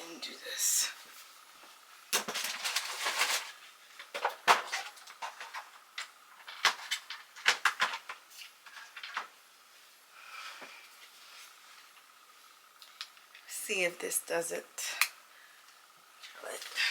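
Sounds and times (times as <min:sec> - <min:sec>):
scraping and rattling: 0:02.1 - 0:09.4.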